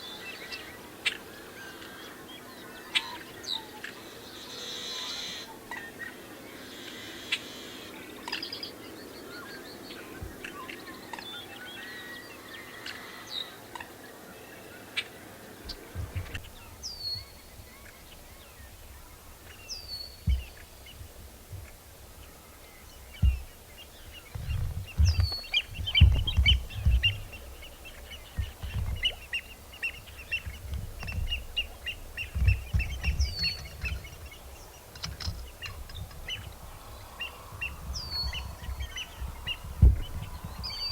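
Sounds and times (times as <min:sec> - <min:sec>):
wind on microphone: 0:15.6 - 0:40.9
fast rattling bird trill: 0:15.7 - 0:40.9.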